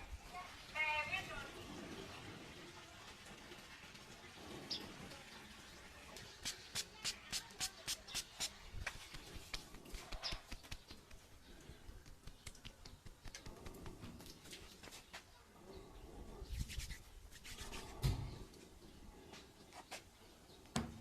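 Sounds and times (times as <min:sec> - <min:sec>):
scratchy strokes near head: 0:16.2 - 0:18.2.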